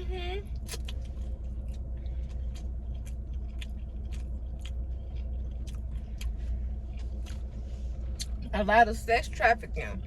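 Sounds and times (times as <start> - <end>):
car engine idling: 0.0 - 10.0
chewing and biting food: 0.6 - 8.4.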